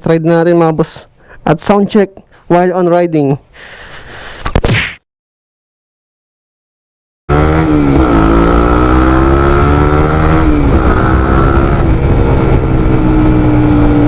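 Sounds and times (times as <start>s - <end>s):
motorcycle engine revving: 7.3s - 14.0s.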